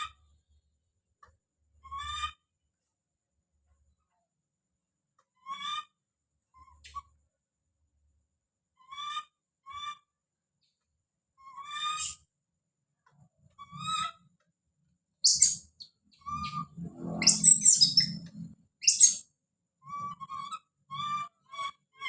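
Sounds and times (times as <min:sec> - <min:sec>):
baby monkey crying: 0:15.2 - 0:15.6, 0:17.2 - 0:19.2.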